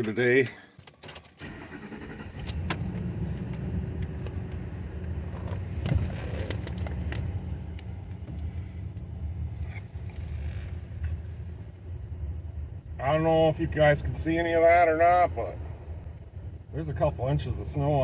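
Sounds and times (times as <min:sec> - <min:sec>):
keys jangling: 0:00.6 - 0:01.4, 0:02.4 - 0:03.7.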